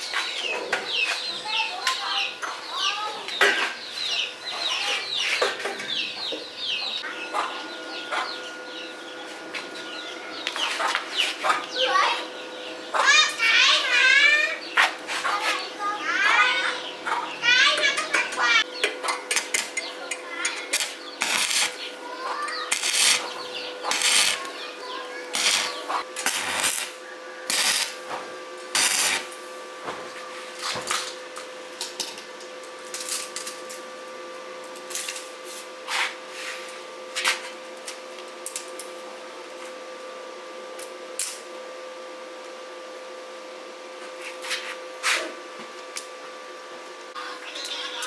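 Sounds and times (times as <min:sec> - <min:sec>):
steady machine hum: 0:06.0 - 0:35.2, 0:44.8 - 0:48.0.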